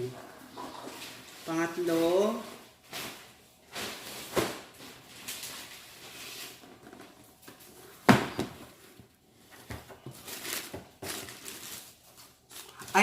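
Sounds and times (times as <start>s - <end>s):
shoebox rustling and scraping: 3.8s - 12.0s.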